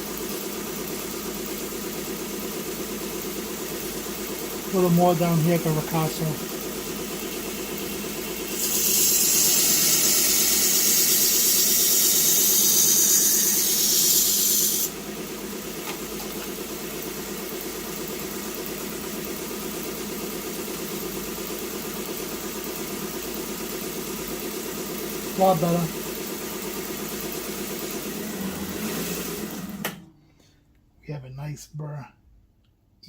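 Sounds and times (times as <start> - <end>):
sharpener motor humming: 7.2 - 15.0
knife blade grinding hiss: 8.6 - 14.9.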